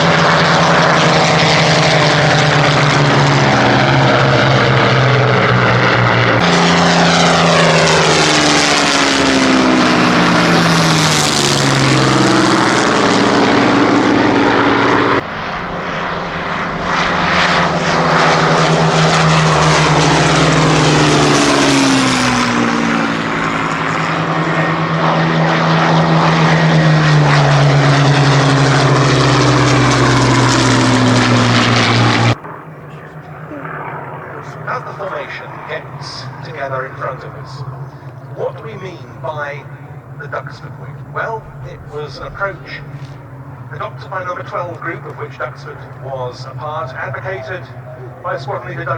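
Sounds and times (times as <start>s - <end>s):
propeller planes flying past: 0.0s - 48.9s.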